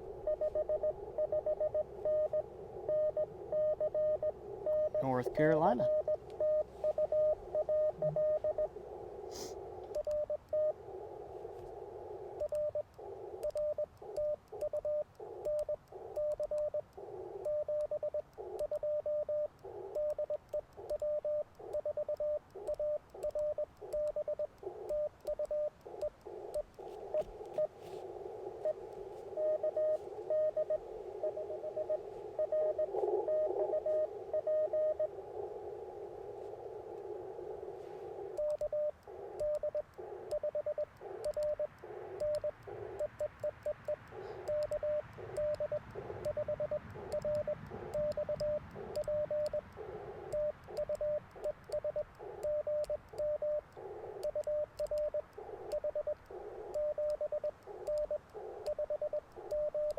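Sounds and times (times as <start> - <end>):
morse code tone: 0.0 - 8.7, 17.4 - 35.2, 36.7 - 53.6, 54.2 - 59.9
radio band hiss: 2.0 - 10.0, 25.8 - 52.7, 53.6 - 54.2, 55.2 - 59.8.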